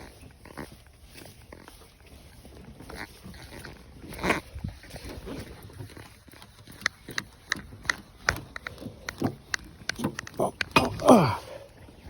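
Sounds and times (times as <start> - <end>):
sharp metallic clicks: 6.7 - 11.1.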